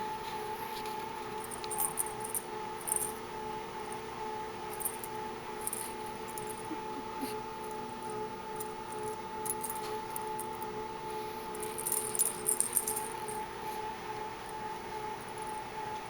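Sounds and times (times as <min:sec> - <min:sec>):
steady hum: 0:00.0 - 0:16.0
collar jingling: 0:01.4 - 0:03.2, 0:04.7 - 0:06.8, 0:07.7 - 0:10.6, 0:11.6 - 0:13.4.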